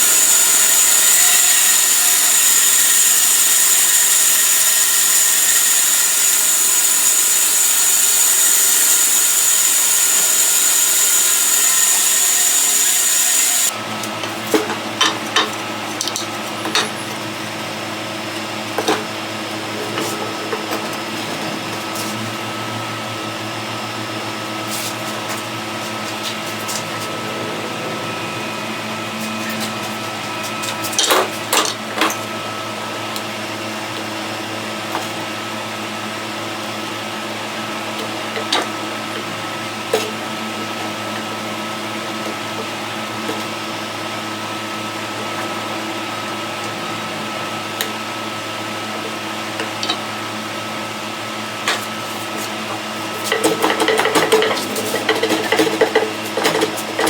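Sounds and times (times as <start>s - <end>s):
power tool whining on wood: 0.0s - 13.8s.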